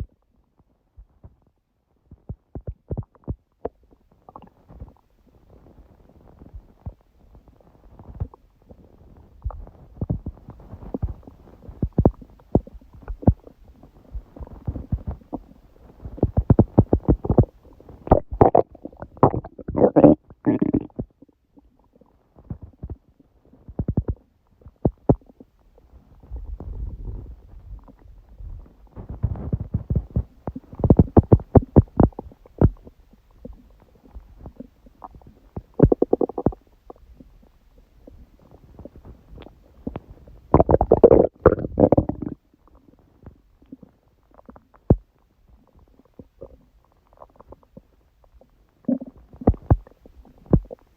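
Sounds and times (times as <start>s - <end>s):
stomach gurgling and growling: 0.0s - 50.9s.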